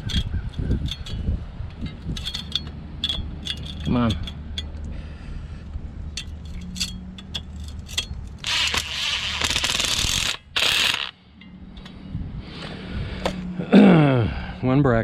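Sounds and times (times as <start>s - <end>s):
power drill driving screw into metal: 7.9s - 11.2s.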